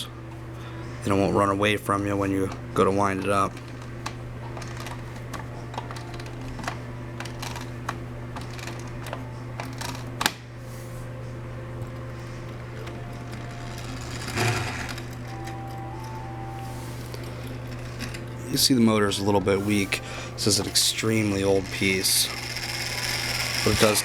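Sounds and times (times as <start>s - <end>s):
ratcheting clicks of winding toy: 13.3s - 15.1s, 20.9s - 24.0s
toy motor whirring: 13.3s - 15.2s, 20.4s - 24.0s.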